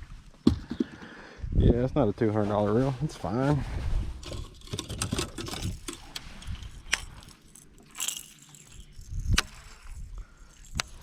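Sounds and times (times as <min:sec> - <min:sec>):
gear knocks and clicks: 0:04.2 - 0:11.0.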